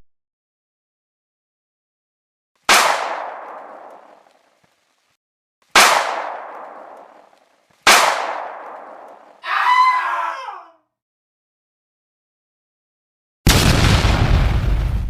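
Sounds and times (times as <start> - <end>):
loud shot or blast: 2.7 - 4.2, 5.7 - 9.1, 13.5 - 15.0.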